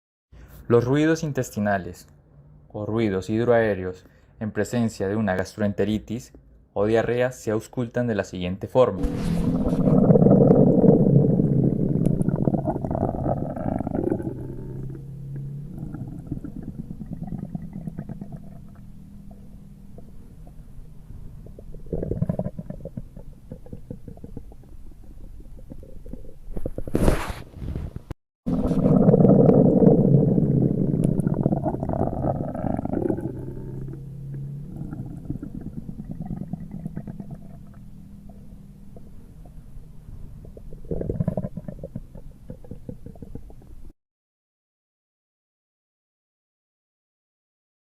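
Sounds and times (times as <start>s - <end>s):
bowel gurgling through stethoscope: 9.0s - 27.4s, 28.5s - 43.9s.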